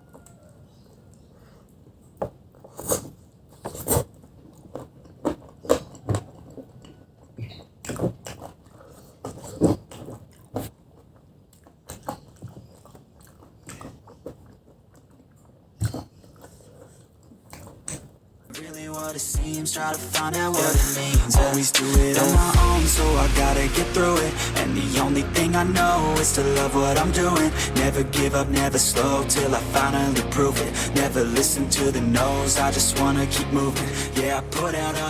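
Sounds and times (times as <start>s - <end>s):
soft chewing: 0.0s - 18.2s.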